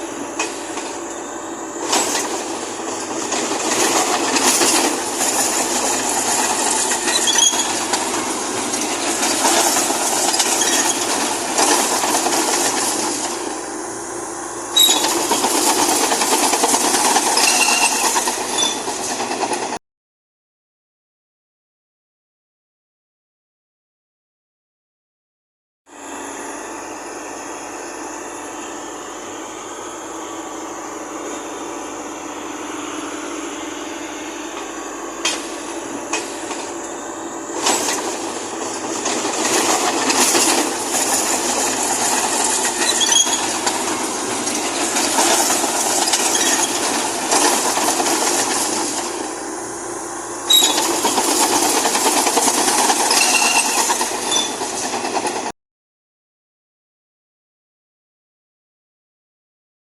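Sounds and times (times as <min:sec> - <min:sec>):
steel tracks clanking and squeaking: 0:00.0 - 0:13.8, 0:14.6 - 0:19.8, 0:33.3 - 0:49.5, 0:50.3 - 0:55.5
bulldozer diesel engine running: 0:00.0 - 0:19.8, 0:26.0 - 0:55.5.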